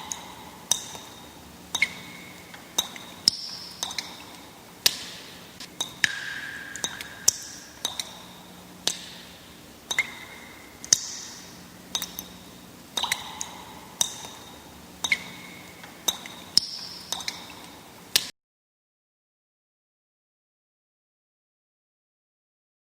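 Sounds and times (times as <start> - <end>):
water drops plinking: 0.0 - 18.3.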